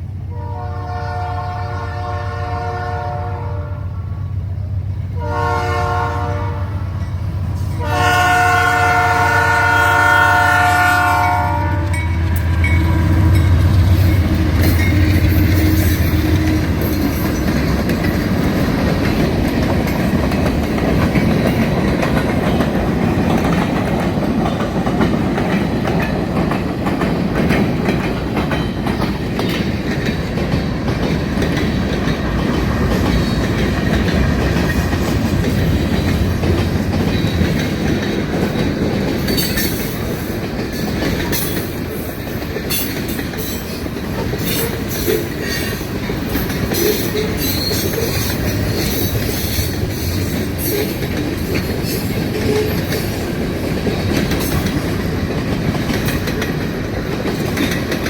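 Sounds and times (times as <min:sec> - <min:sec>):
locomotive air horn blasts: 0:00.3 - 0:04.1, 0:05.2 - 0:06.9, 0:07.8 - 0:14.6
freight cars wheels clacking: 0:12.3 - 0:58.0.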